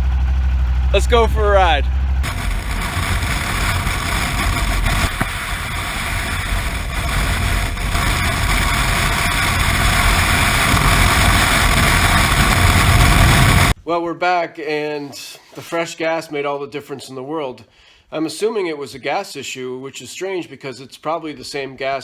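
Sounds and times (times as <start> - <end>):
motorcycle engine running: 0.0 - 13.7.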